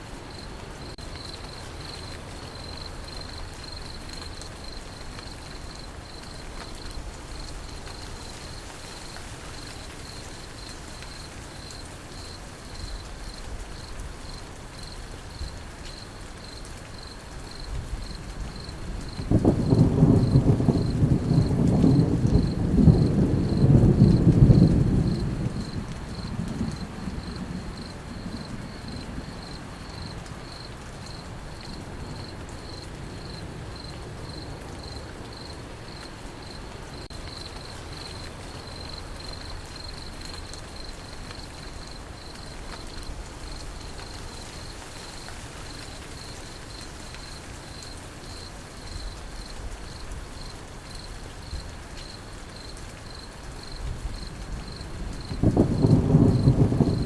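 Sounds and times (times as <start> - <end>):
rain hissing: 0.0 - 57.0
crickets chirping: 0.3 - 57.0
thunder rumbling: 17.7 - 34.3, 53.7 - 57.0.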